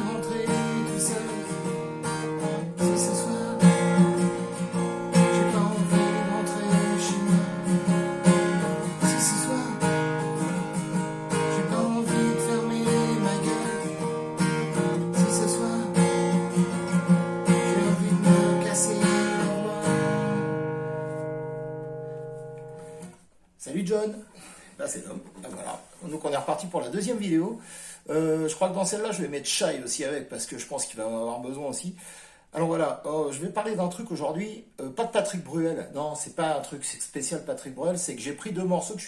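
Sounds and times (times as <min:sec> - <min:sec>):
acoustic guitar strumming: 0:00.0 - 0:23.2.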